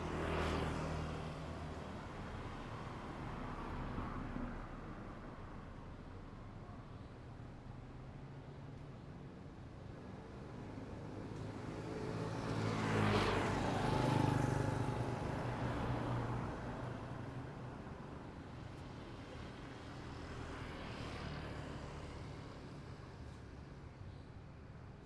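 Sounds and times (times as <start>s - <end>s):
street traffic hum: 9.9s - 24.0s.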